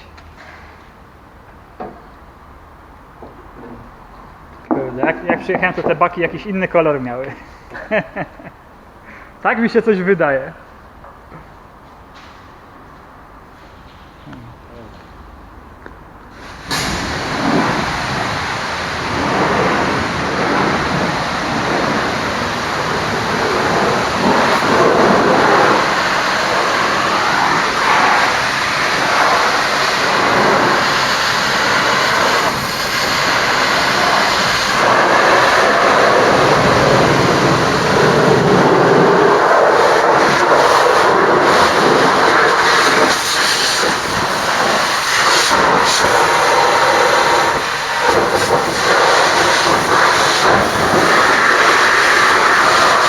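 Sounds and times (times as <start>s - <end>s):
high-pressure water spray: 16.3s - 53.0s.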